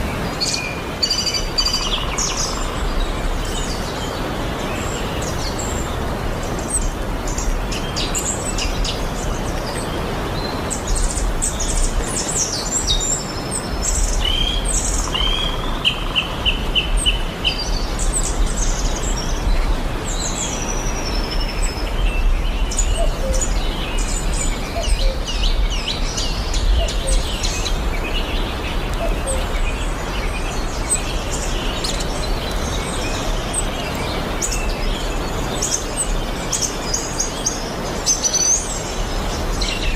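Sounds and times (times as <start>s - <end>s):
wild birds chirping: 0.0s - 39.9s.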